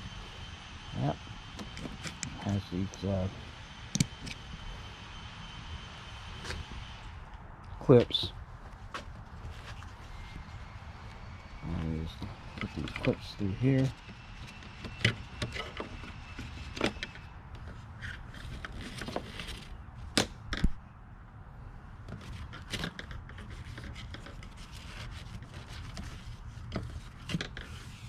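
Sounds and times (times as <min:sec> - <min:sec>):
straps rubbing and scraping: 0:08.6 - 0:14.9, 0:22.1 - 0:28.0.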